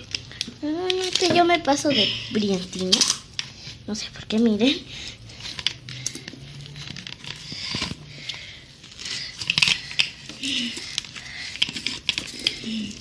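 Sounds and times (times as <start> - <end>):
sticky crackles and pops: 0.0 - 1.8.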